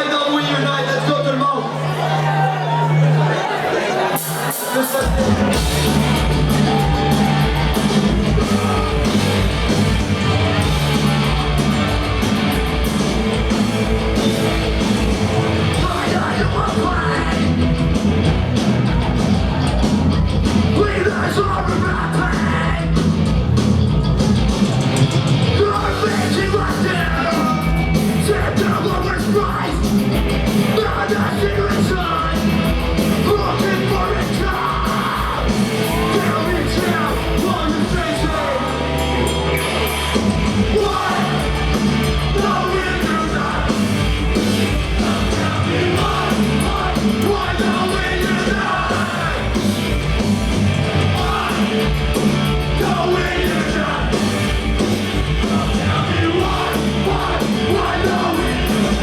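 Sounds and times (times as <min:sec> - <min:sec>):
singer yelling: 0:00.0 - 0:09.7, 0:15.3 - 0:17.7, 0:20.6 - 0:23.0, 0:25.5 - 0:29.9, 0:30.6 - 0:49.9, 0:50.9 - 0:59.0
distorted electric guitars: 0:04.1 - 0:59.0
fast pounding drum beat: 0:05.0 - 0:38.9, 0:39.8 - 0:59.0
bass guitar: 0:05.0 - 0:59.0.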